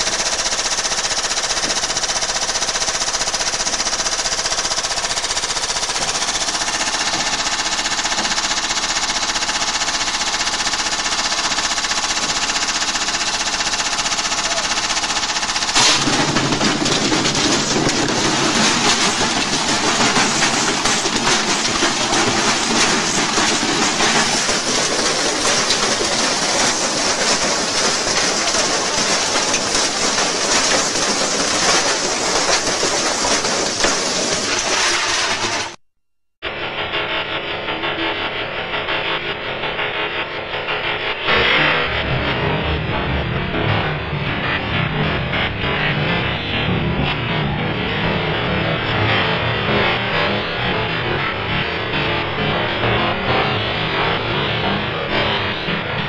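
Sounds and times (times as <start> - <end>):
cabinet rattling violently: 15.8 - 35.6
washing machine drum hammering: 15.8 - 35.8.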